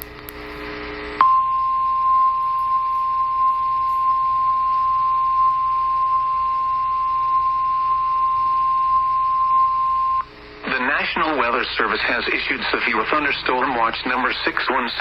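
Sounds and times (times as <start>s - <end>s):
radio hiss and hum: 0.0s - 15.0s
piercing alarm tone: 1.2s - 10.3s.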